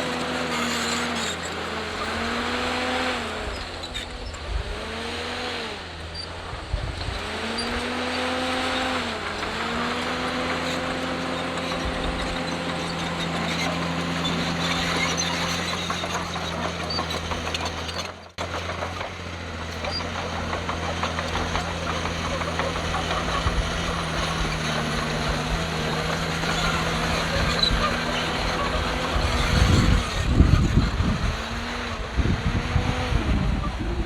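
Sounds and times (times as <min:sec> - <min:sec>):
bulldozer diesel engine droning: 0:00.0 - 0:34.0
clatter of tracks and stone: 0:06.0 - 0:33.1.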